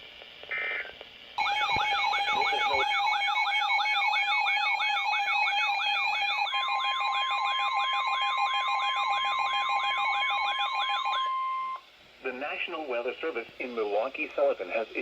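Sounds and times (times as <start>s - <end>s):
steady beeping tones: 1.4s - 11.8s
warbling electronic alert siren: 1.4s - 11.8s
steady warning alarm tone: 1.4s - 11.9s.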